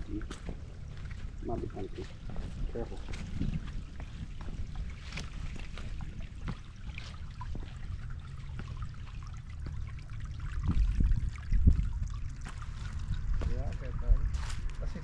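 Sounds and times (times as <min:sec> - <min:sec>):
low rumble on microphone: 0:00.0 - 0:15.0
stream trickling: 0:00.0 - 0:15.0
footsteps on leaf litter and twigs: 0:00.1 - 0:07.8, 0:14.2 - 0:14.9.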